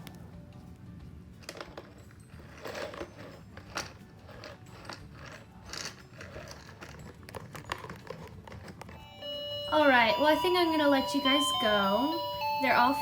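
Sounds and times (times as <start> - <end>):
toys clicking and rattling: 1.4 - 9.2.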